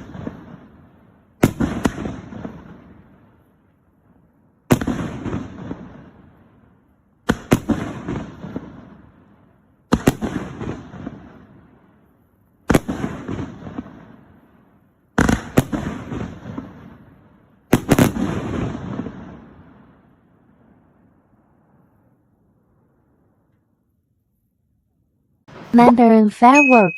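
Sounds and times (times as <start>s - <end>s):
firework bangs: 0.0s - 3.5s, 4.6s - 6.5s, 7.2s - 20.2s
firework crackling trail: 0.0s - 23.9s.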